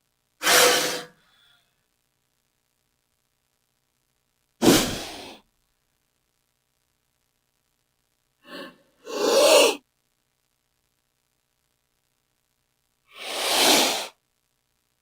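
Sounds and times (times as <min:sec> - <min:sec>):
snake hissing: 0:00.4 - 0:01.2, 0:04.6 - 0:05.4, 0:08.5 - 0:09.8, 0:13.1 - 0:14.2.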